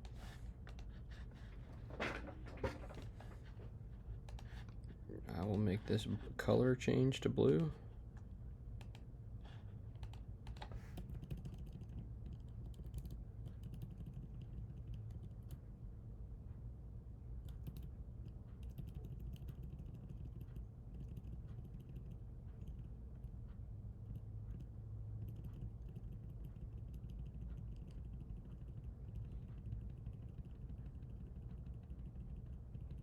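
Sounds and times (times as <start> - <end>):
low steady hum: 0.0 - 33.0
computer keyboard typing: 4.3 - 4.8, 9.9 - 15.6, 17.4 - 22.9, 24.5 - 33.0.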